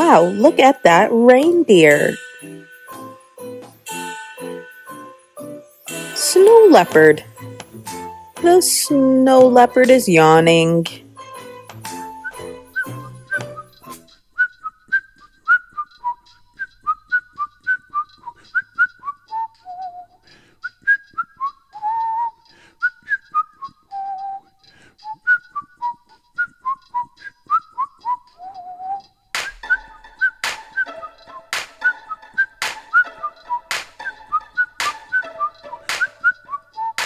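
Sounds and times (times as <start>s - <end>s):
whistled melody: 11.9s - 37.0s.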